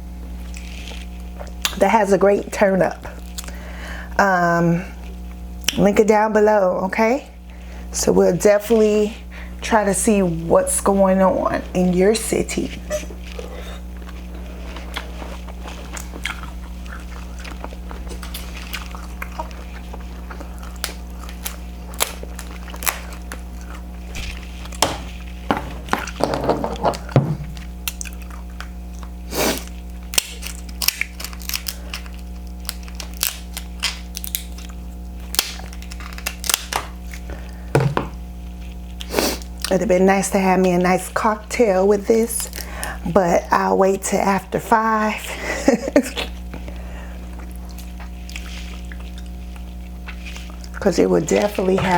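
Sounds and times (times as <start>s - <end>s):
low steady hum: 0.0s - 51.9s
wet chewing mouth sounds: 13.0s - 24.8s, 46.2s - 50.8s
crab shell cracking: 16.0s - 25.2s, 26.9s - 37.5s.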